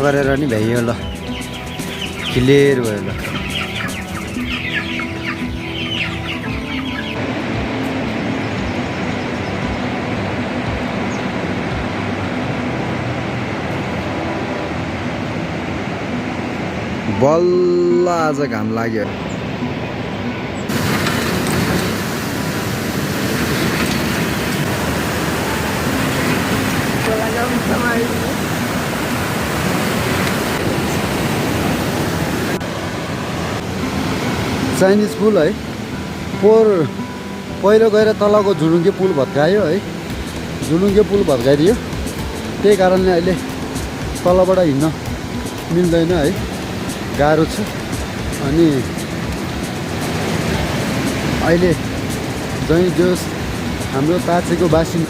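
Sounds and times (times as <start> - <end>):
chickens clucking: 0.0 - 9.9, 20.7 - 32.6
fast-flowing river water: 0.0 - 55.0
steady rushing noise: 0.0 - 55.0.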